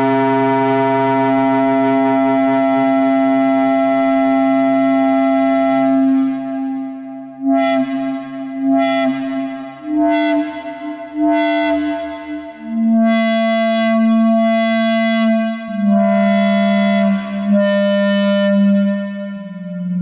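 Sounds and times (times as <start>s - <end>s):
synthesizer playing brassy held notes: 0.0s - 20.0s.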